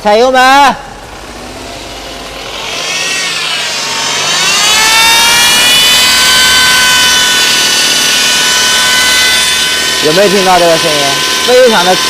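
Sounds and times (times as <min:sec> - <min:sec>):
gearbox whining: 0:00.9 - 0:12.0.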